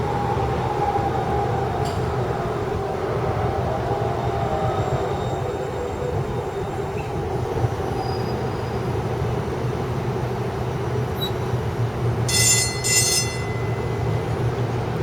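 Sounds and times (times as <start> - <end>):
light-rail train rumbling: 0.0 - 15.0
high-pitched wheel squeal: 12.3 - 14.5.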